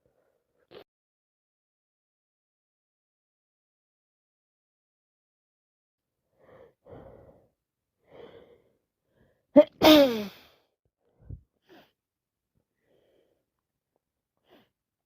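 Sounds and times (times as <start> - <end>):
woman breathing in softly: 6.3 - 9.5
woman sneezing loudly: 9.6 - 10.5.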